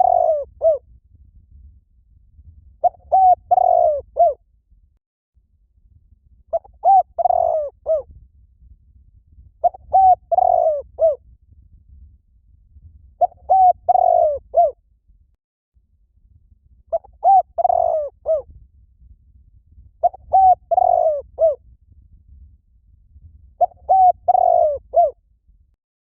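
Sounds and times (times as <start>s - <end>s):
dove cooing: 0.0s - 0.8s, 2.8s - 4.4s, 6.6s - 8.1s, 9.6s - 11.2s, 13.2s - 14.8s, 16.9s - 18.5s, 20.0s - 21.6s, 23.6s - 25.2s.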